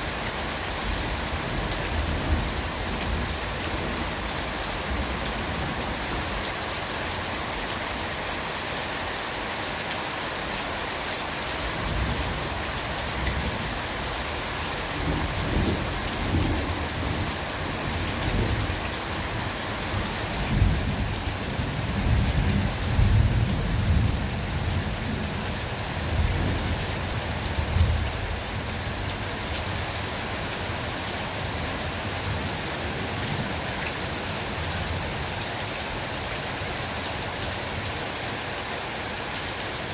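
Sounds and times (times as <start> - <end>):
steady rain: 0.0 - 39.9
low rolling thunder: 15.0 - 18.7, 20.4 - 25.4.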